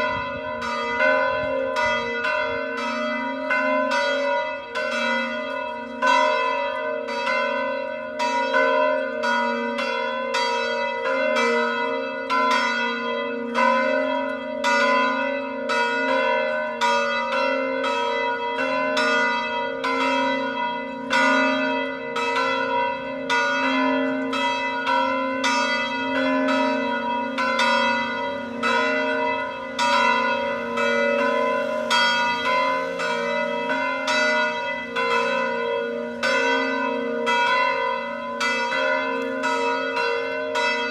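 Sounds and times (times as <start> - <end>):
church bells pealing: 0.0 - 40.9.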